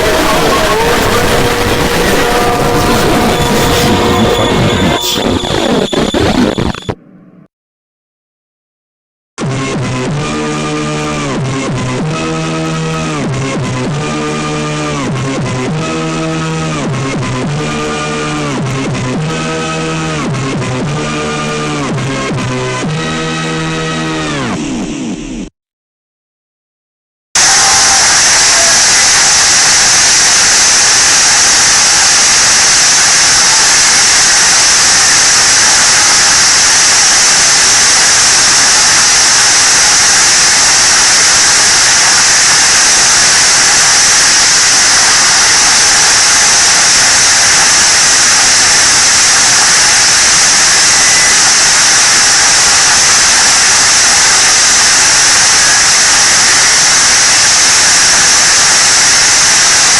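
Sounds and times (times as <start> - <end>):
loud steady hiss: 0.0 - 7.0, 27.4 - 59.9.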